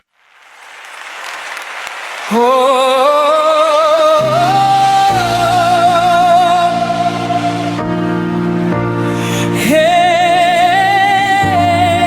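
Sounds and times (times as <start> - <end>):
hissing wash of sound: 0.0 - 10.9
low sustained chords: 4.2 - 12.0.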